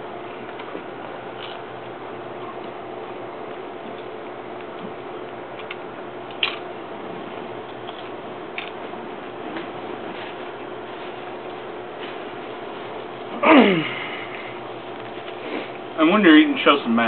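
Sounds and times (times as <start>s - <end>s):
steady background hum: 0.0s - 17.0s
person chewing crunchy food: 0.4s - 2.8s, 7.6s - 11.6s.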